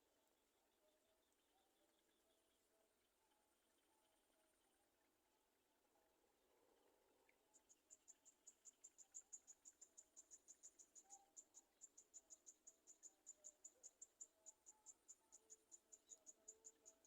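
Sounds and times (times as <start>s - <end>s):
insect chirping: 7.5s - 17.0s.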